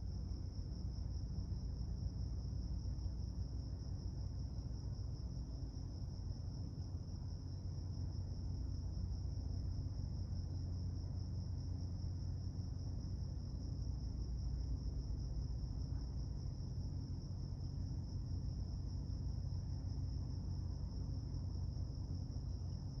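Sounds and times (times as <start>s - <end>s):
low droning hum: 0.0s - 23.0s.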